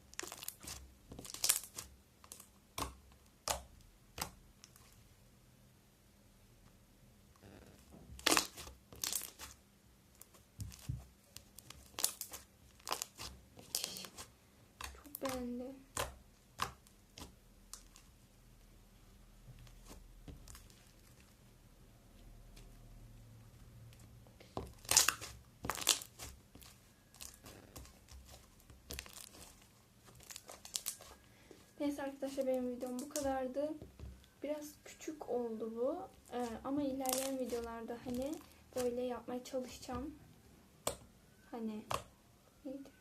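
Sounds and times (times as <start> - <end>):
slime crackling and popping: 0.0 - 5.0, 8.1 - 18.2, 19.6 - 21.4, 24.0 - 31.3, 31.9 - 33.5, 36.0 - 39.0.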